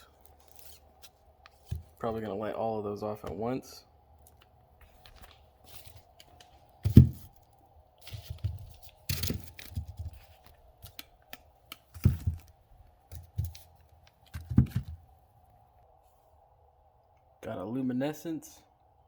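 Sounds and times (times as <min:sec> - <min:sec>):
packaging rustling and scraping: 0:00.0 - 0:02.0, 0:04.3 - 0:15.0
dull thumps of packages set down: 0:06.8 - 0:07.4, 0:11.9 - 0:12.5, 0:14.3 - 0:15.0.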